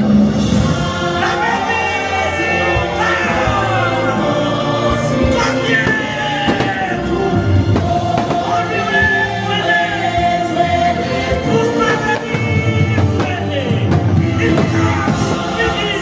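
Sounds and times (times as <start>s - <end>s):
sharp hits: 5.8s - 8.8s, 11.9s - 16.0s.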